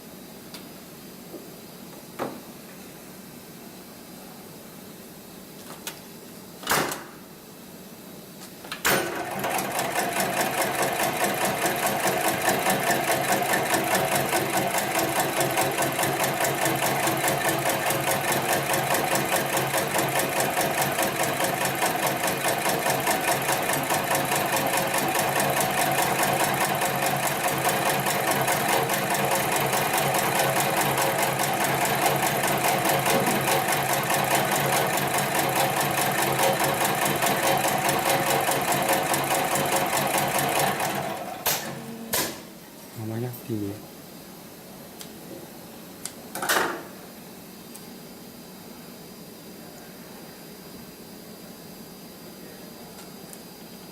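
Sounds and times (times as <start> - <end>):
sewing machine stitching: 8.9 - 41.8.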